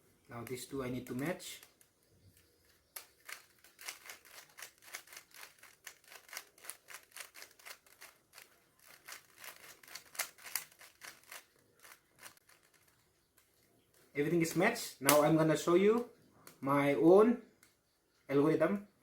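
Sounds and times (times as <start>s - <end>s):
puzzle cube clicking as turned: 2.8s - 13.3s.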